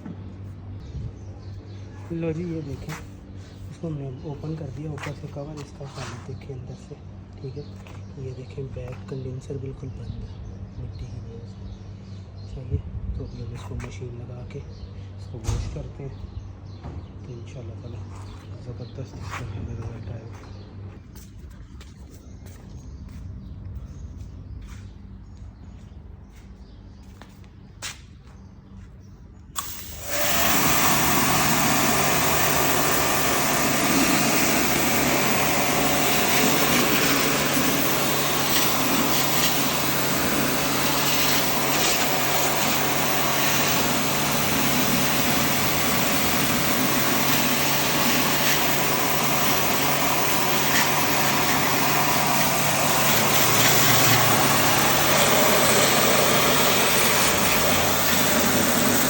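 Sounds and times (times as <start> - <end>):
pressure washer motor hum: 29.6 - 59.0
water jet hissing: 29.6 - 59.0.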